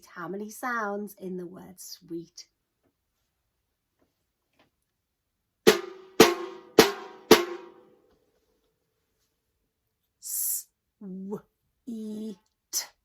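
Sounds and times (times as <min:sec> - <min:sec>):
rhythm sticks struck together: 0:05.7 - 0:07.8.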